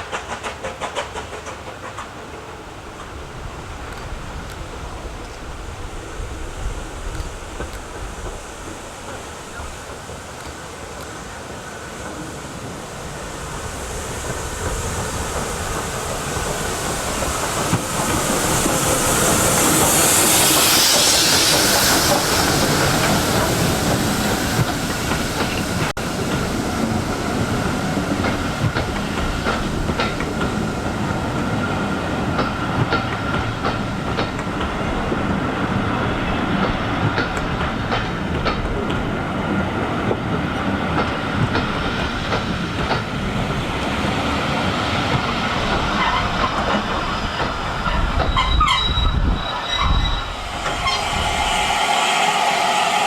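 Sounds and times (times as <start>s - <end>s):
train wheels clattering over rail joints: 0.0s - 4.6s, 13.8s - 43.9s, 44.6s - 49.0s
steam train hissing: 0.0s - 53.0s.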